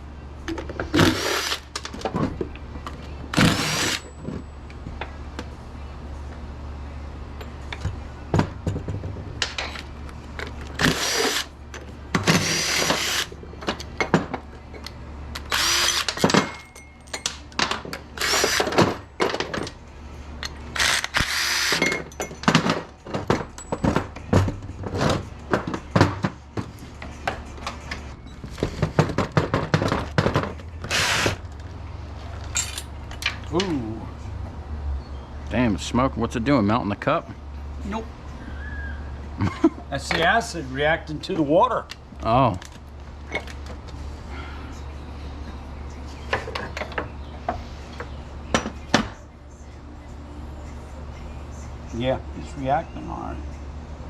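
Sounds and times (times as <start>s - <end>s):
power drill whining: 1.0s - 1.7s, 3.4s - 4.0s, 10.8s - 11.5s, 12.3s - 13.3s, 15.5s - 16.2s, 18.2s - 18.7s, 20.8s - 21.8s.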